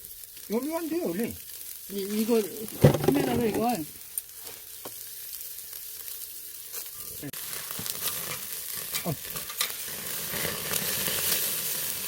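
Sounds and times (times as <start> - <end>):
meat sizzling on a grill: 0.0 - 12.0.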